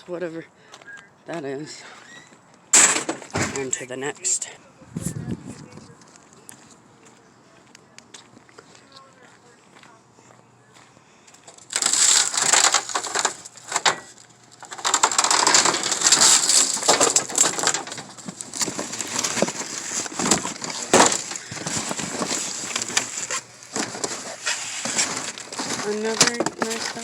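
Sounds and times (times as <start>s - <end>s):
trash rustling and crunching: 2.4s - 4.2s, 11.3s - 27.0s.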